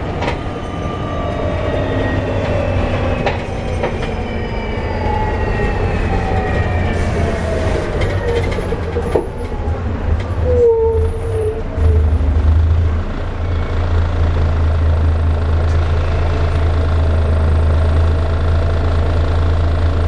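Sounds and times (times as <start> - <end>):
bus engine and road rumble: 0.0 - 20.0
brief squeal: 0.3 - 9.7, 10.4 - 12.2.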